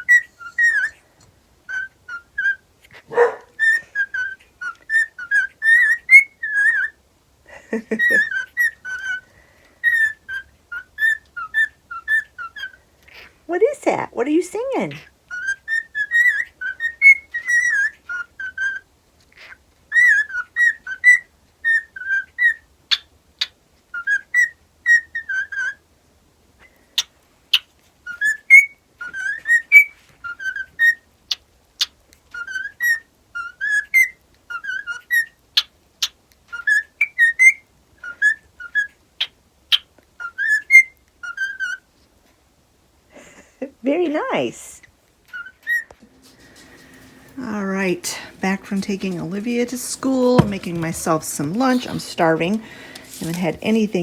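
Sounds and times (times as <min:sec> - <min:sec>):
cockatiel whistling: 0:00.0 - 0:01.0, 0:01.7 - 0:07.0, 0:07.8 - 0:09.2, 0:09.8 - 0:12.8, 0:15.3 - 0:18.8, 0:19.4 - 0:25.8, 0:28.1 - 0:31.0, 0:32.3 - 0:35.4, 0:36.5 - 0:41.8, 0:45.3 - 0:47.2.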